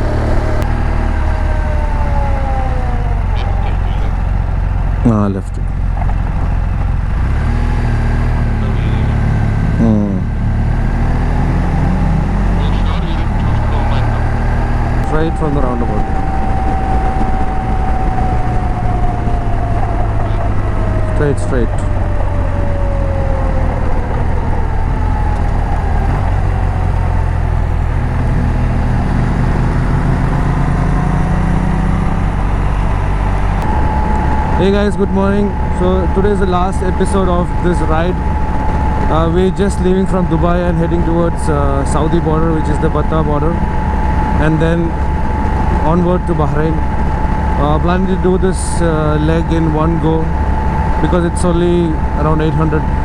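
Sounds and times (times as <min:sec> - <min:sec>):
motorcycle engine running: 0:00.0 - 0:12.8, 0:13.5 - 0:53.0
short voice-like sound: 0:03.3 - 0:04.2, 0:08.6 - 0:10.3, 0:12.5 - 0:14.3.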